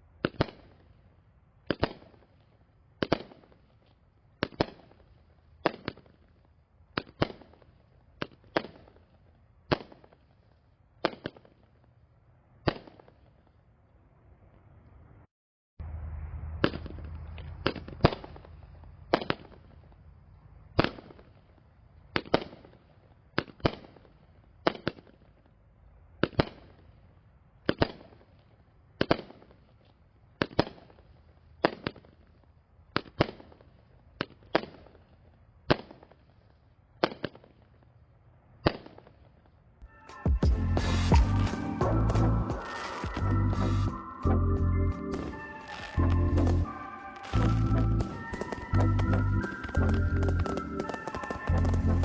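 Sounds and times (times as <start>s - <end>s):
firework cake reports: 39.9s - 44.3s, 45.1s - 52.0s.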